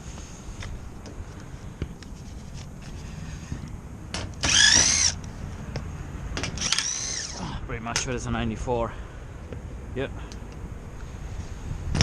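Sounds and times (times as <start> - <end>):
power drill whirring: 4.4 - 5.2, 6.6 - 7.4.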